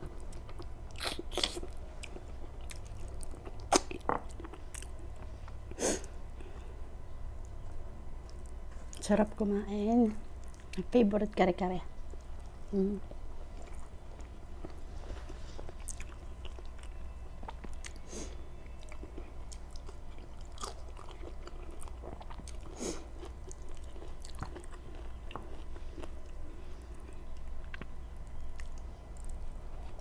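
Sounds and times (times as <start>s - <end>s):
chewing: 0.1s - 5.7s, 12.1s - 30.0s.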